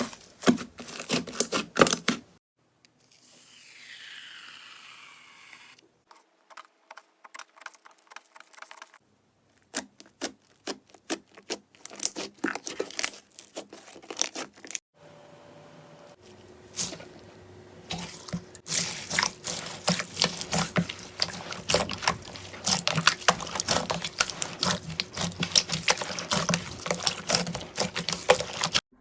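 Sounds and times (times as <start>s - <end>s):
slime crackling and popping: 17.9s - 28.8s.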